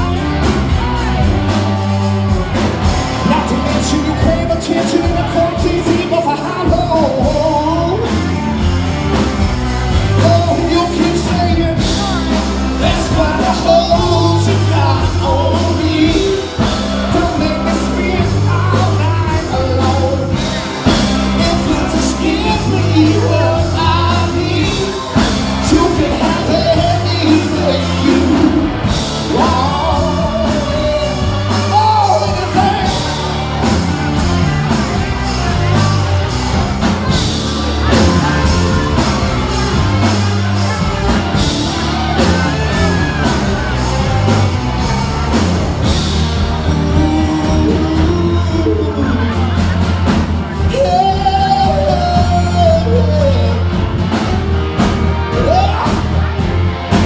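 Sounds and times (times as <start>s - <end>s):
live rock band playing: 0.0s - 57.0s
person singing: 0.0s - 57.0s.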